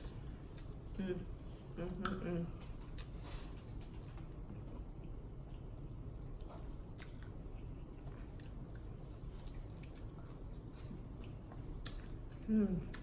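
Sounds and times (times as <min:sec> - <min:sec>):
chewing crispy food: 0:02.0 - 0:13.0.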